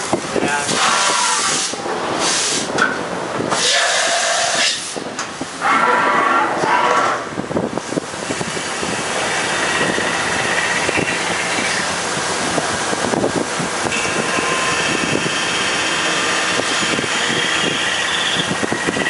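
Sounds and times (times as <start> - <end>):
machine hum and hiss: 0.0 - 5.6, 7.4 - 19.0
high machine whine: 7.4 - 19.0.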